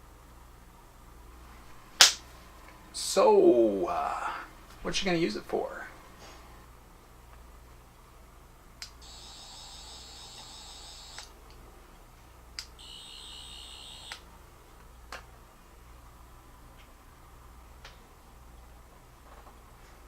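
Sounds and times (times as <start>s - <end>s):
toy screwdriver buzzing whine: 9.0s - 11.3s, 12.8s - 14.2s.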